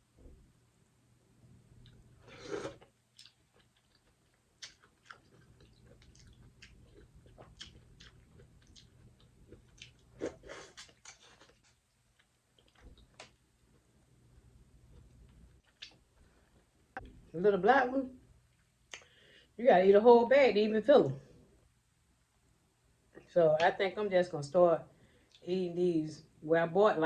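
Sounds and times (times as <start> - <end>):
person chewing food: 1.7 - 17.2
small mouth clicks: 18.6 - 19.1.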